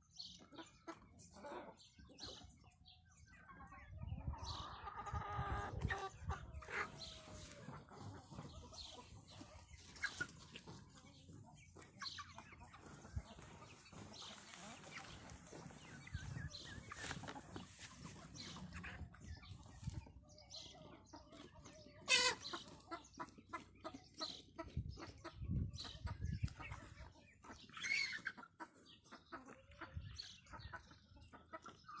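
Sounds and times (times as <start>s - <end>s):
chickens clucking: 0.0s - 32.0s
chicken squawk: 4.4s - 10.4s, 22.0s - 23.0s, 27.7s - 28.5s.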